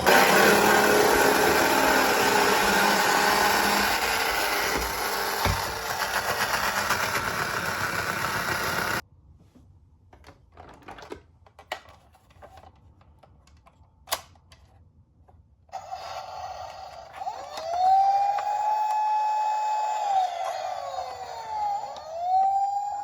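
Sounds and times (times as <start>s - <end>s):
toy car clicking rattle: 5.6s - 9.0s
toy electronic siren: 15.8s - 23.0s.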